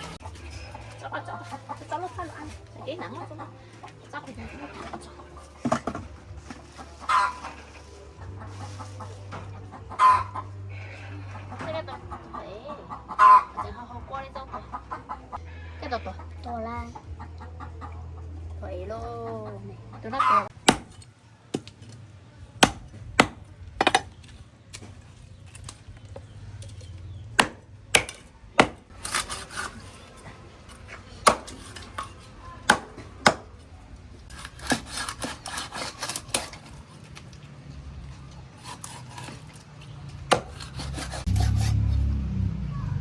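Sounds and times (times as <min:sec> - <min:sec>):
scraping: 0:26.6 - 0:33.6.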